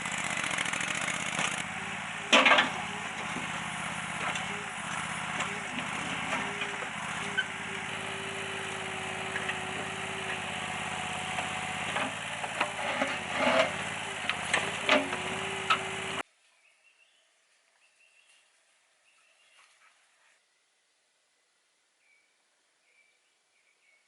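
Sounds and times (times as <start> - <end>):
small engine running: 0.0 - 16.2.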